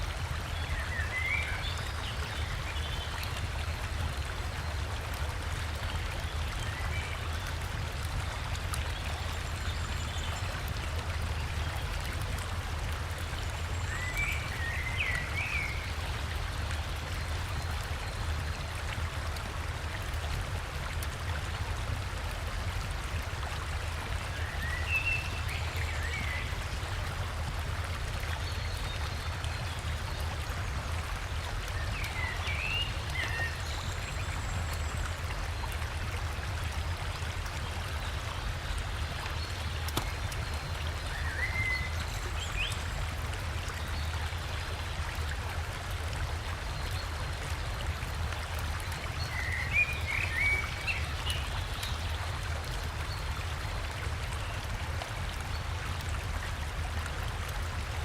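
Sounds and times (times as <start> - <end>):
water rushing over waterfall: 35.0 - 54.4.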